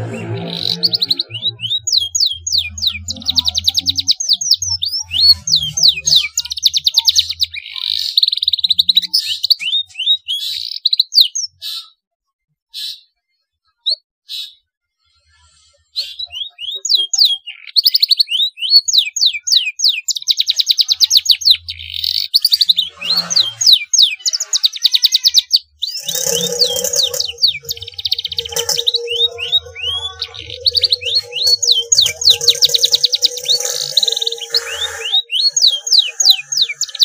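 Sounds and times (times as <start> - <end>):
steady low tone: 0.0 - 3.7, 26.0 - 36.8
canary singing: 0.0 - 11.9, 16.0 - 37.0.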